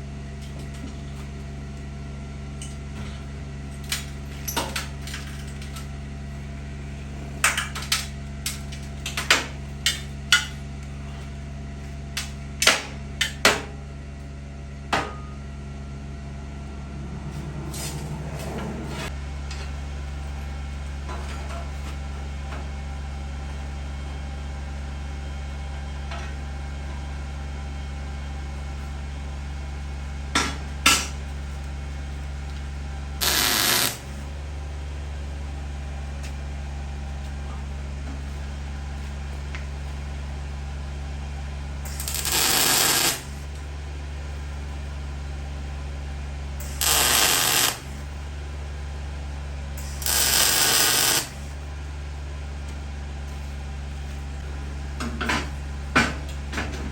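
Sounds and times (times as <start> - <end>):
low machine hum: 0.0 - 56.9
hissing crackling burst: 33.2 - 34.0.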